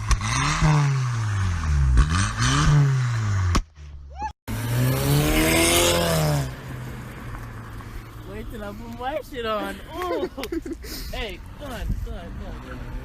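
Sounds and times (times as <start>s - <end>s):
car engine revving: 0.0s - 3.6s, 4.5s - 9.0s.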